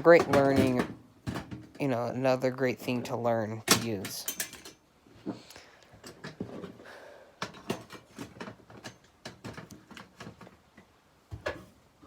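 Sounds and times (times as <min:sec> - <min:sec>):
hard objects clicking and knocking: 0:00.0 - 0:01.8, 0:06.0 - 0:11.7.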